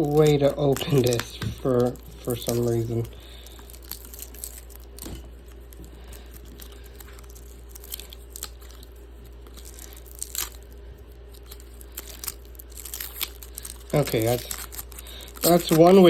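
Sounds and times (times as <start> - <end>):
light crinkling: 0.0 - 16.0.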